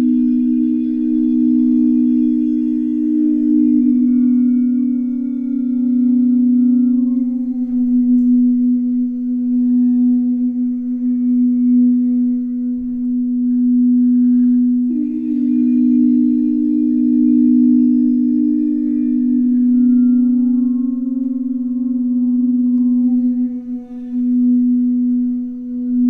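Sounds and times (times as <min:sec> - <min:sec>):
singing bowls ringing: 0:00.0 - 0:26.0.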